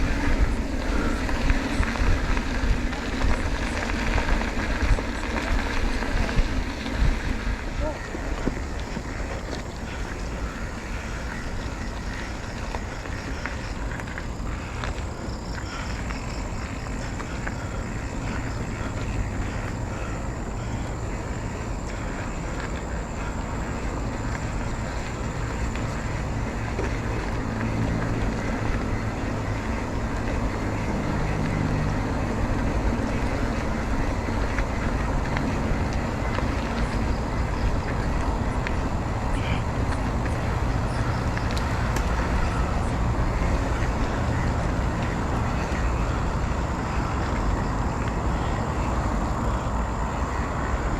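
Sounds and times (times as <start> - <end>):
motorcycle engine running: 0.0 - 50.9
road rush: 0.0 - 50.9
wind: 0.0 - 50.9.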